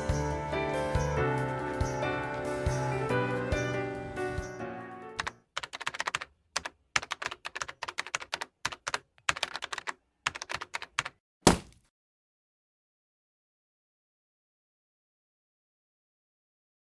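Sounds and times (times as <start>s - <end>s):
background music: 0.0s - 5.4s
keyboard typing clicks: 5.2s - 11.2s
loud thump: 11.5s - 11.8s.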